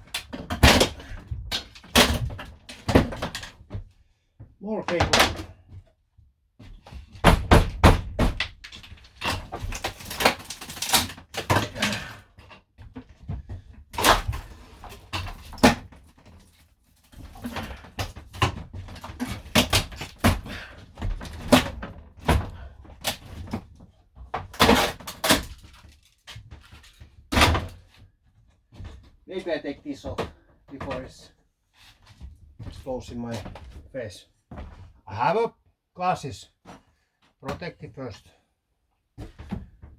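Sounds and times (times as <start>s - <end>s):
knocks and thuds inside a van: 0.0s - 6.0s, 6.6s - 10.0s, 17.1s - 24.8s, 39.2s - 39.9s.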